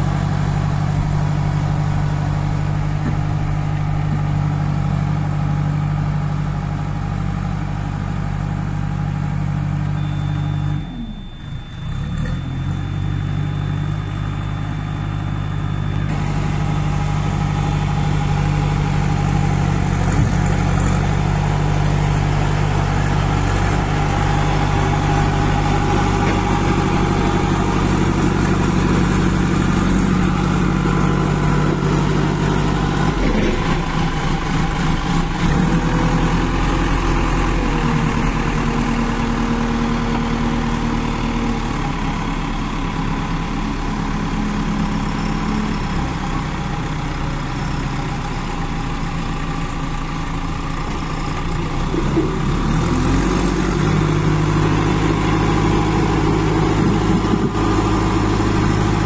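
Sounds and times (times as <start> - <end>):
diesel engine running: 0.0 - 59.0.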